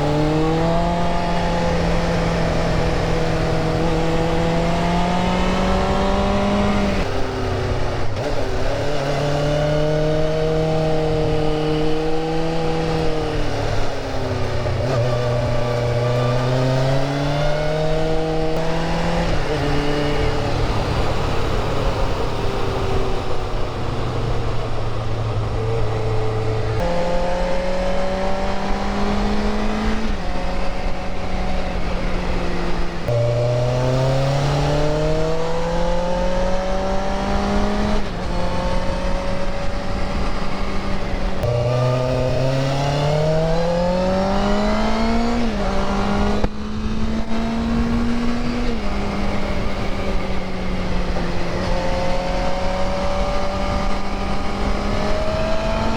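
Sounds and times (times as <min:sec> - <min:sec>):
motorcycle engine accelerating: 0:00.0 - 0:55.9.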